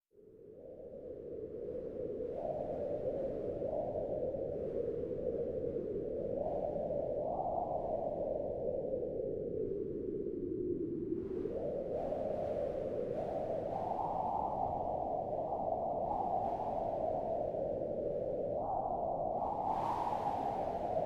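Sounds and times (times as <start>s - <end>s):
muffled storm wind: 0.2s - 21.0s.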